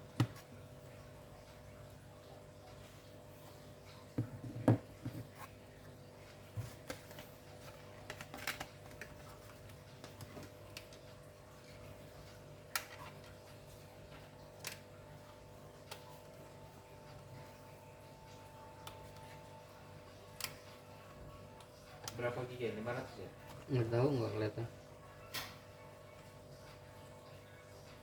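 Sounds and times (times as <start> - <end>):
hands clicking and tapping laptop parts: 0.2 - 0.4.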